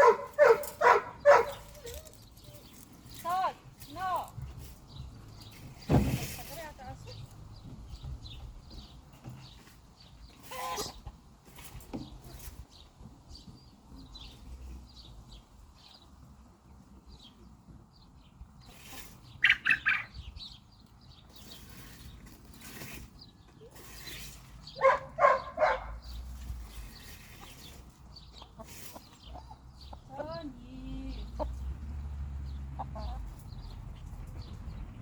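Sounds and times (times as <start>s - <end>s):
chickens clucking: 0.0s - 2.2s, 7.1s - 12.6s, 18.4s - 34.8s.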